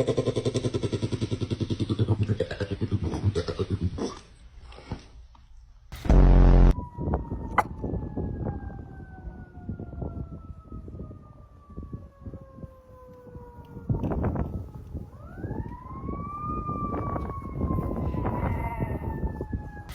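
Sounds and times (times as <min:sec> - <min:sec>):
siren wailing: 0:06.0 - 0:19.9.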